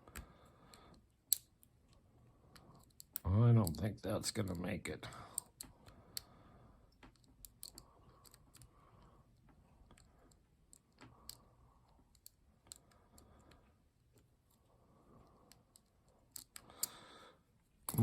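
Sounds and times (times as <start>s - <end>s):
lock pick clicking in a lock: 1.3s - 1.7s, 2.6s - 3.2s, 6.9s - 8.7s, 15.5s - 17.0s.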